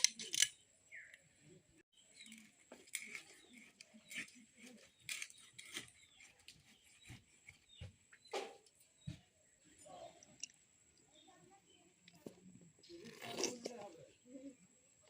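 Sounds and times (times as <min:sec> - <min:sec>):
blade clicking and scraping fish: 0:02.2 - 0:07.8, 0:12.1 - 0:14.1.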